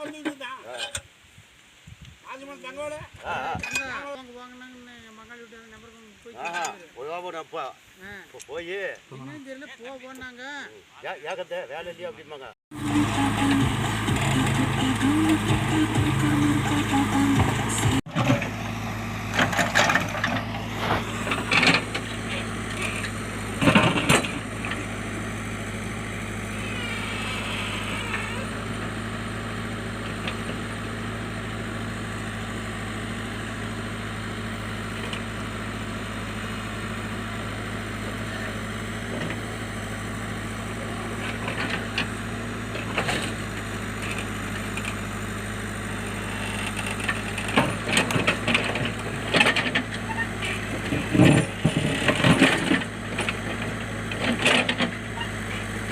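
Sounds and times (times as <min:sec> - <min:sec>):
diesel engine running: 0:12.7 - 0:55.9.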